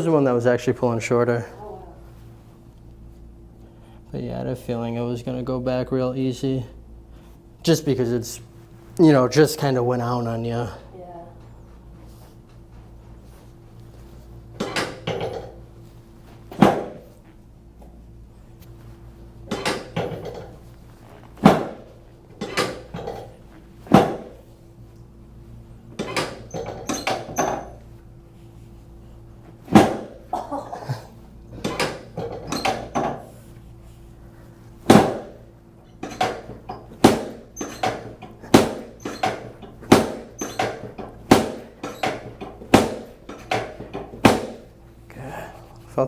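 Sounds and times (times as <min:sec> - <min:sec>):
back cracking and thumping: 0:16.2 - 0:17.3, 0:19.4 - 0:24.4, 0:29.5 - 0:33.3, 0:34.8 - 0:44.8.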